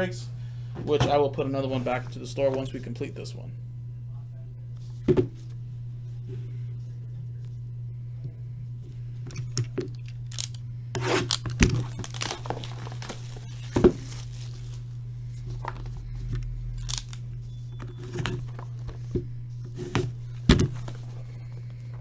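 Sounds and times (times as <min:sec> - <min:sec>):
steady low hum: 0:00.0 - 0:22.0
plastic wrapping torn and crinkled: 0:09.8 - 0:15.9, 0:16.8 - 0:17.4.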